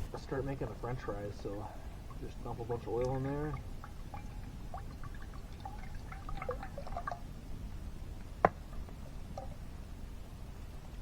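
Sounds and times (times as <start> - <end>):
oil glugging out of a bottle: 2.1 - 7.3.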